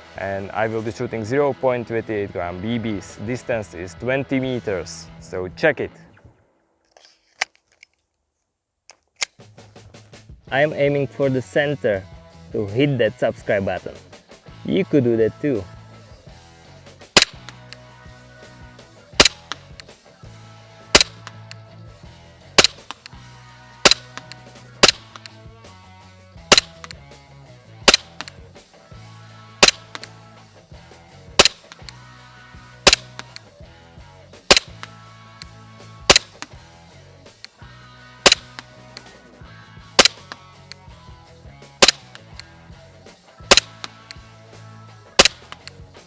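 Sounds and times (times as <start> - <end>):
airsoft pistol shots: 17.2 - 17.7, 19.2 - 19.7, 21.0 - 21.4, 22.6 - 23.1, 23.8 - 25.3, 26.5 - 26.9, 27.9 - 28.3, 29.6 - 30.1, 31.4 - 31.9, 32.9 - 33.4, 34.5 - 34.9, 36.1 - 36.5, 38.3 - 38.6, 40.0 - 40.4, 41.8 - 42.2, 43.5 - 44.0, 45.2 - 45.7.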